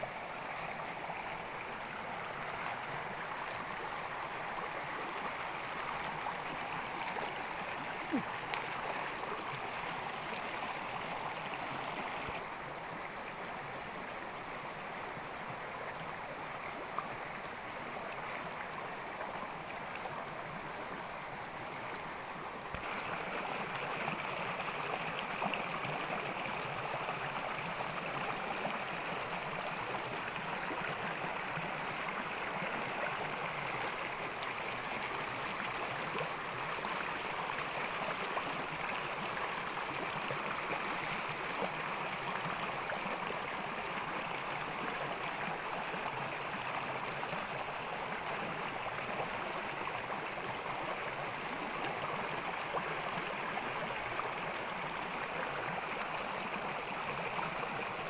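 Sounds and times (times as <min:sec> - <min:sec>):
stream water rushing: 0:00.0 - 0:58.0.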